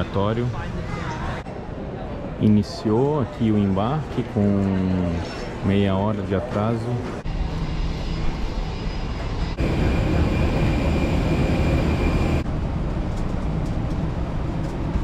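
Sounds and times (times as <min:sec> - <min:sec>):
jet airliner noise: 0:07.2 - 0:13.8
high steady whine: 0:07.3 - 0:12.7.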